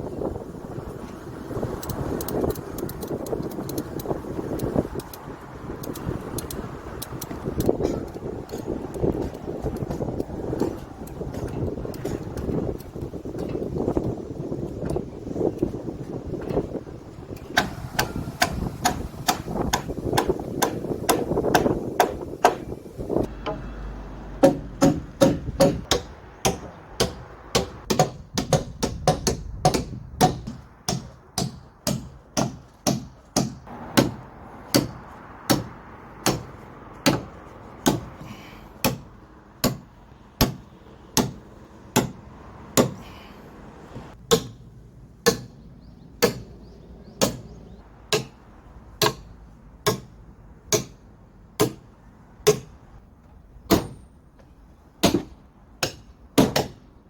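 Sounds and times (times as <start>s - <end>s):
hammer strikes: 17.5s - 23.7s, 24.4s - 38.2s, 38.8s - 40.6s, 41.2s - 41.4s, 42.0s - 42.2s, 42.8s - 43.0s, 45.2s - 45.5s, 48.1s - 48.4s, 49.0s - 49.3s, 49.9s - 50.1s, 55.0s - 56.8s.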